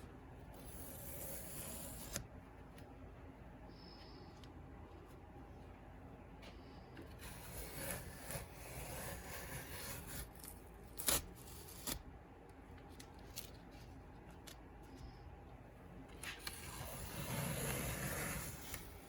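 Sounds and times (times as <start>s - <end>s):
rubbing and scraping handling noise: 3.8s - 15.5s.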